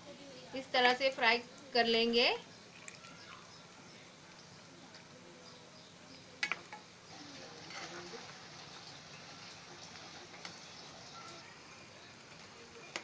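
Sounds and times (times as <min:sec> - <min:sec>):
food frying in hot oil: 0:05.8 - 0:13.0.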